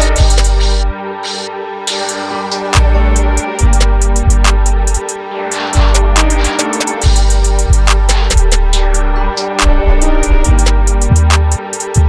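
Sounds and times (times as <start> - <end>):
deep bass notes: 0.0 - 0.9, 2.8 - 5.0, 5.8 - 6.5, 7.1 - 11.6
dark hip hop beat: 0.0 - 12.0
rapid hi-hat ticks: 0.0 - 12.0.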